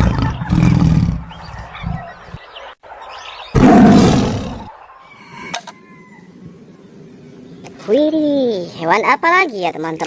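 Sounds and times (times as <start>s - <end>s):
tiger roaring: 3.5s - 4.7s.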